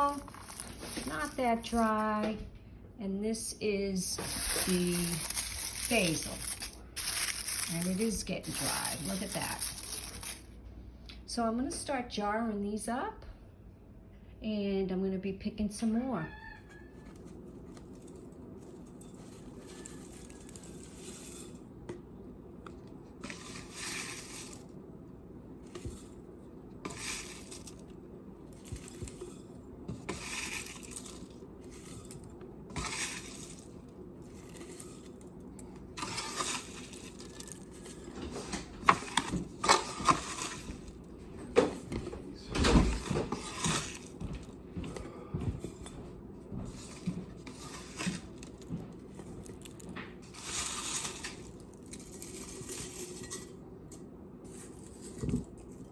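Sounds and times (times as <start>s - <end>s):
glass jars clinking: 0.0s - 1.9s, 4.2s - 10.5s
dried leaves rustling and crackling: 0.0s - 2.2s, 4.0s - 10.5s, 17.1s - 21.6s, 23.2s - 24.7s, 26.9s - 41.0s, 42.9s - 44.4s, 46.7s - 53.4s.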